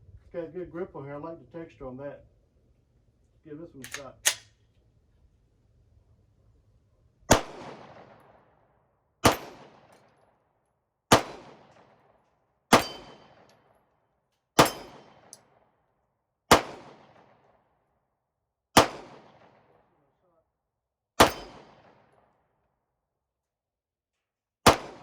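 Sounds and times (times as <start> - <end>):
pistol shots: 7.3 - 8.3, 9.2 - 10.0, 11.1 - 12.0, 12.7 - 13.6, 14.6 - 15.4, 16.5 - 17.4, 18.8 - 19.7, 21.2 - 22.1, 24.6 - 25.0
bullet ringing on steel target: 12.7 - 13.4, 14.6 - 15.4, 21.2 - 21.7.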